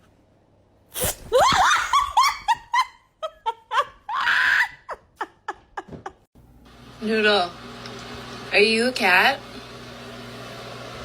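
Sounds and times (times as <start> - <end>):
person laughing hard: 1.3 - 6.3.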